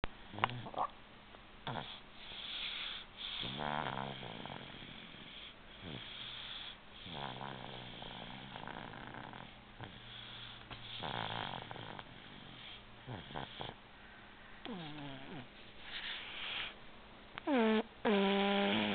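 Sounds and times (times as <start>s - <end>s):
person snoring: 3.4s - 4.9s, 10.9s - 13.8s, 14.7s - 15.5s, 17.4s - 18.9s
hissy breathing: 12.2s - 16.9s.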